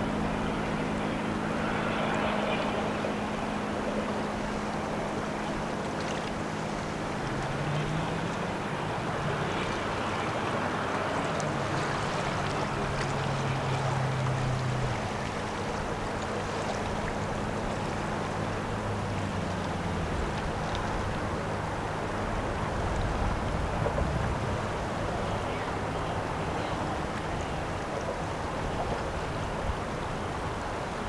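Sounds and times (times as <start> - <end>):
ship engines droning: 0.0 - 31.0
water wash: 0.0 - 31.0
wind noise: 19.8 - 31.0.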